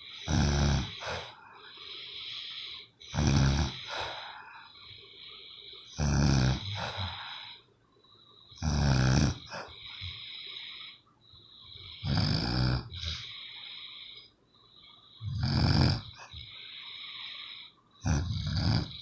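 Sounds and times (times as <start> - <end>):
person snoring loudly: 0.0 - 1.4, 2.0 - 4.3, 5.9 - 7.5, 8.5 - 10.2, 11.9 - 13.6, 15.2 - 19.0
thin high whistling breath: 1.0 - 3.0, 9.5 - 12.0, 13.0 - 15.2.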